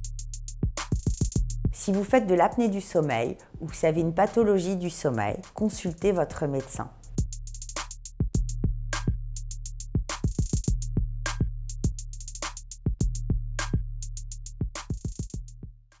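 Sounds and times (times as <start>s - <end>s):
electronic music with drum-machine beat: 0.0s - 2.7s, 5.4s - 6.3s, 7.0s - 16.0s.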